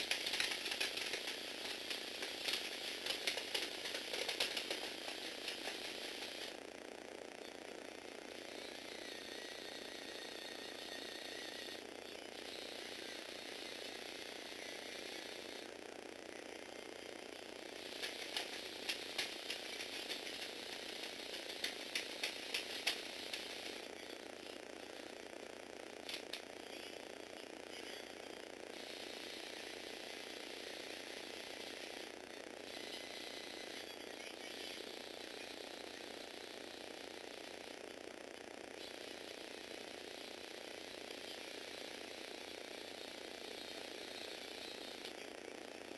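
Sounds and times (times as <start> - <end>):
gear train clicking: 0.0 - 6.6, 17.8 - 23.8
toy motor with clicking gears: 0.0 - 6.7, 8.3 - 15.8, 17.5 - 25.2, 26.0 - 37.9, 38.8 - 45.3.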